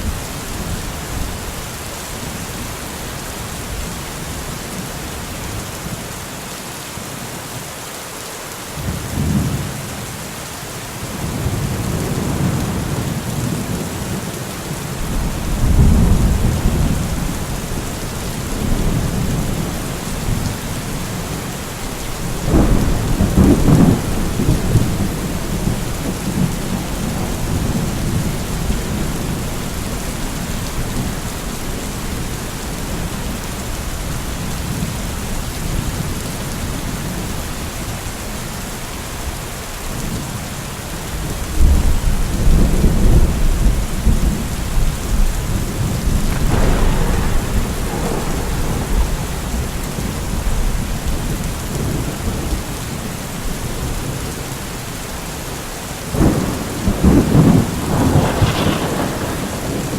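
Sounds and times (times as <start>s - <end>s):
heavy rain falling: 0.0s - 59.9s
low thunder rumbling: 11.2s - 37.6s, 41.2s - 54.5s, 56.1s - 59.9s
sharp thunder crack: 45.5s - 52.1s, 56.2s - 59.9s.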